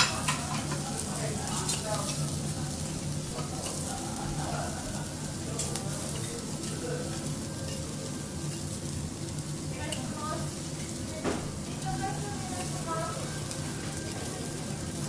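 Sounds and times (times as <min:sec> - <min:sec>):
food sizzling on a griddle: 0:00.0 - 0:15.0.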